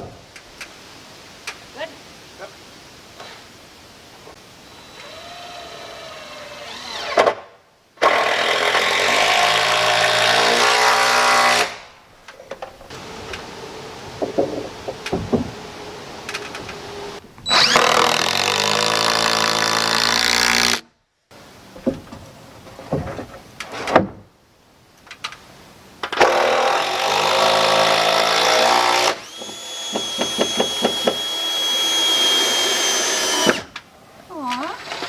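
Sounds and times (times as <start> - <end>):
screw gun motor whine: 17.4 - 19.1, 26.7 - 33.7.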